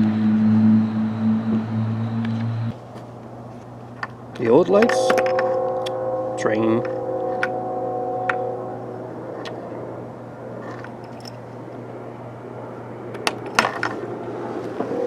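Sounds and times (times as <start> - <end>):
passing train rumble: 4.4 - 15.0.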